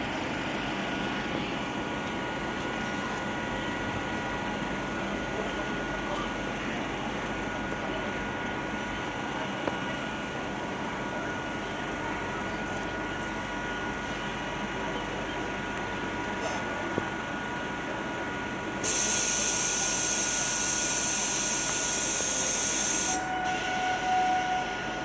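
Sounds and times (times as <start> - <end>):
mechanical hum with whine: 0.0 - 25.0.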